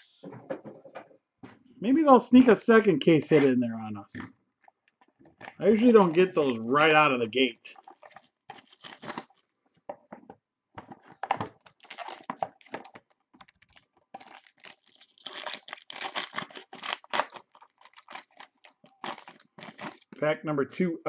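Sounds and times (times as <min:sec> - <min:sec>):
plastic wrapping tearing and crinkling: 0:05.2 - 0:09.5, 0:11.1 - 0:20.2.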